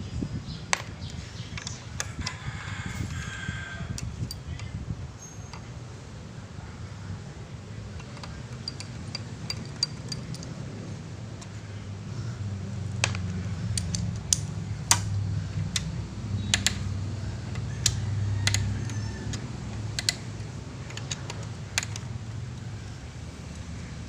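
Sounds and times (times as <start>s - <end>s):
sharp clicks of small tools: 8.0s - 10.6s, 12.9s - 22.7s.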